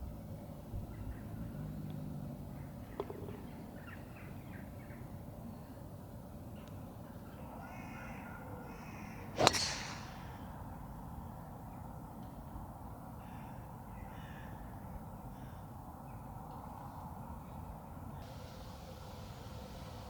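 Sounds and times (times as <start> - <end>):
golf club striking ball: 9.4 - 10.8.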